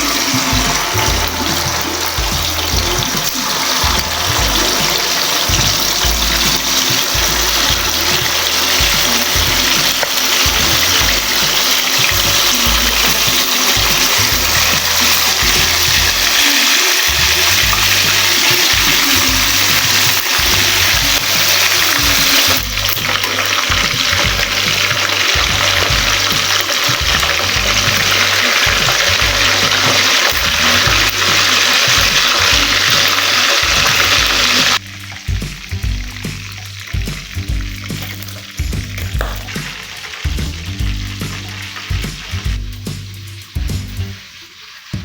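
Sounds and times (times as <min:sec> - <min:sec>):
water rushing: 0:00.0 - 0:35.2
background music with bass: 0:00.0 - 0:44.3.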